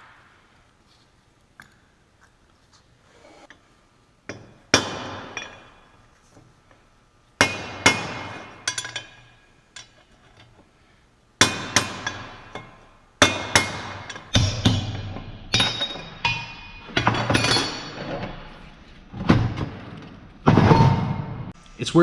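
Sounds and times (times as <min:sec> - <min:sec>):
hammer striking steel punch: 0:04.7 - 0:05.7, 0:07.4 - 0:09.2, 0:11.4 - 0:17.1.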